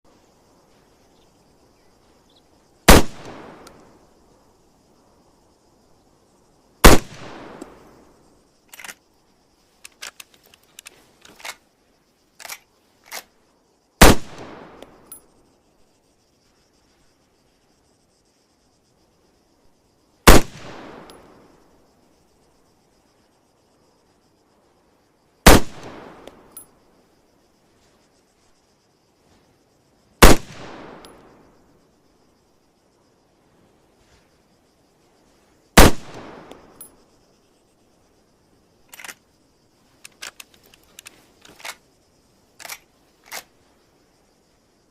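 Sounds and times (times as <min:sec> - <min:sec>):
rifle shots with echo: 0:02.9 - 0:03.6, 0:06.8 - 0:07.8, 0:14.0 - 0:14.8, 0:20.3 - 0:21.2, 0:25.5 - 0:26.3, 0:30.2 - 0:31.2, 0:35.8 - 0:36.6
light rifle bolt clicks: 0:08.7 - 0:09.0, 0:09.8 - 0:11.7, 0:12.4 - 0:13.3, 0:38.9 - 0:39.2, 0:40.0 - 0:41.8, 0:42.6 - 0:43.5.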